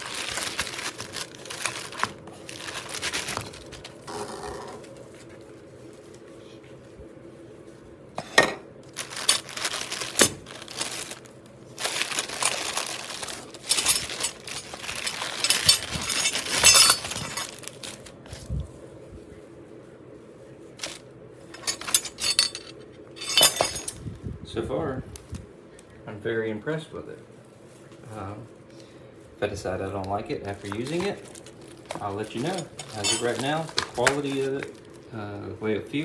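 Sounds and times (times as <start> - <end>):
packaging rustling: 0.0 - 4.1, 8.9 - 18.2, 20.8 - 24.0, 30.0 - 35.2
clicks and clinks of small parts: 11.9 - 18.0, 20.8 - 24.0, 30.6 - 34.8.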